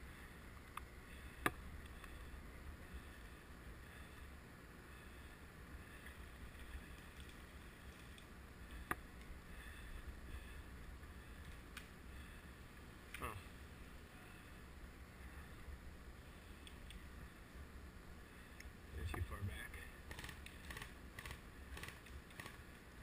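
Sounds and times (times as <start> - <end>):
sharp clicks: 20.1 - 22.6.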